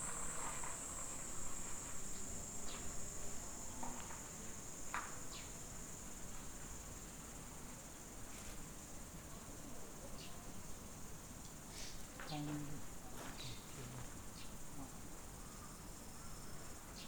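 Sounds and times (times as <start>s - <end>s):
insect chorus: 0.0s - 17.0s.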